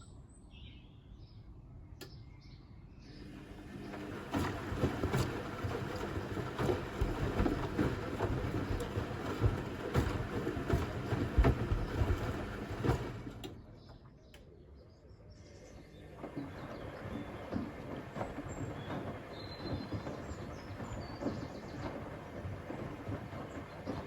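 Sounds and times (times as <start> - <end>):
washing machine drum turning: 3.6 - 13.6, 16.2 - 24.0
load tumbling knocks: 4.1 - 13.6, 16.2 - 24.0
water sloshing: 4.1 - 14.0, 16.2 - 24.0.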